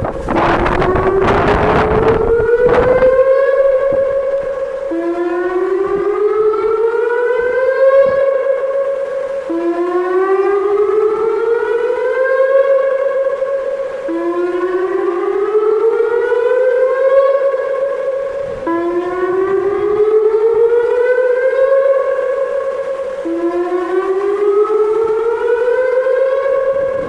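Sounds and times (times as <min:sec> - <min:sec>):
outdoor warning siren whooping: 0:00.0 - 0:27.0.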